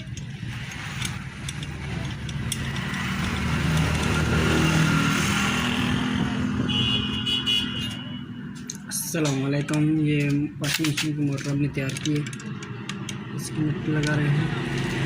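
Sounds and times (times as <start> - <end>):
vehicle engine passing by: 0.4 - 6.7, 12.7 - 15.0.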